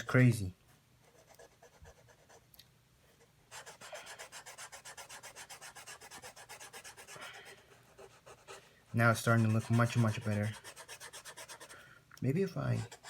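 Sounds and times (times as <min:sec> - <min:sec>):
marker scribbling: 0:01.1 - 0:02.4, 0:03.5 - 0:11.8, 0:12.7 - 0:13.0.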